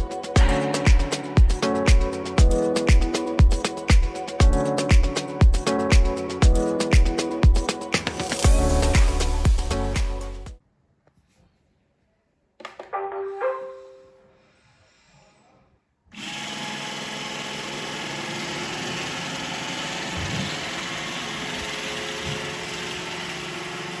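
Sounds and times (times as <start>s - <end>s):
vacuum motor and brushes running: 16.2s - 24.0s.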